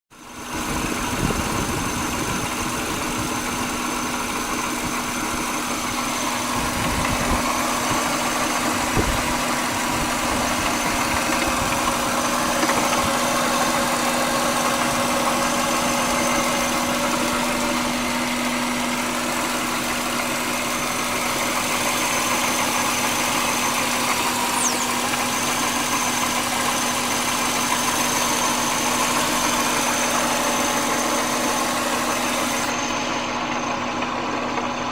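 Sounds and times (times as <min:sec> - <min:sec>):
car engine idling rough: 0:00.1 - 0:34.9
engine knock: 0:00.2 - 0:34.9.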